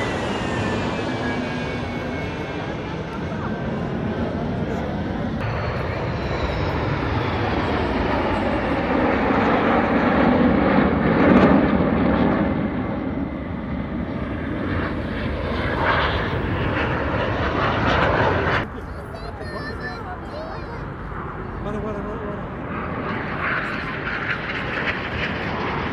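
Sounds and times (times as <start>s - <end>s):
jet aircraft roar: 0.0s - 25.9s.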